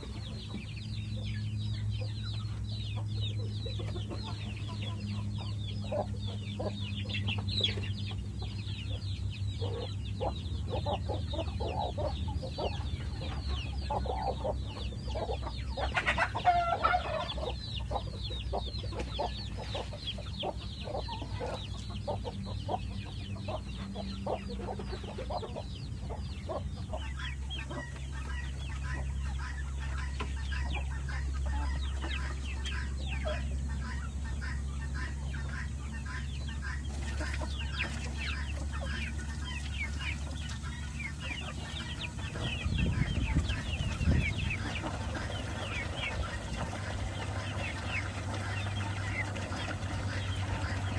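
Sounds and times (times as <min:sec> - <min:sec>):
chickens clucking: 0:00.0 - 0:50.9
steady low hum: 0:00.0 - 0:50.9.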